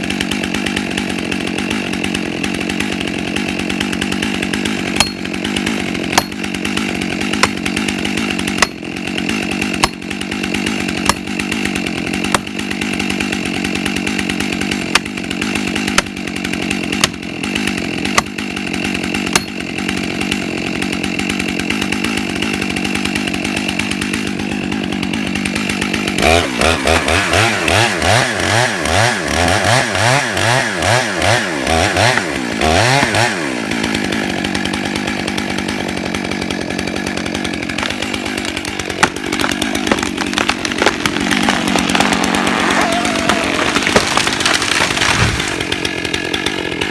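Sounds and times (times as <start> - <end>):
chainsaw engine running: 0.0 - 46.9.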